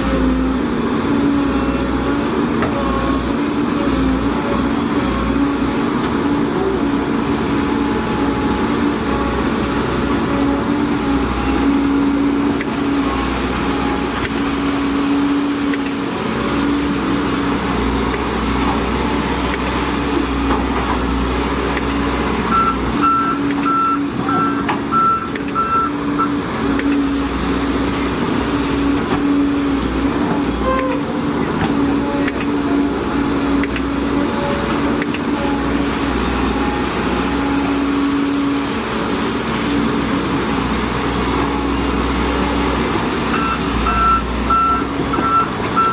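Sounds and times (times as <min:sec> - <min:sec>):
excavator diesel engine running: 0:00.0 - 0:45.9
warning alarm beeping: 0:22.5 - 0:27.0, 0:43.3 - 0:45.9.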